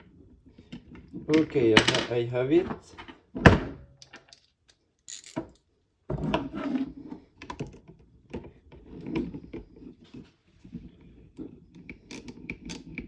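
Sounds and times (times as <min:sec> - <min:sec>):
small clicks and knocks of handling: 0:04.0 - 0:05.7, 0:07.4 - 0:13.0.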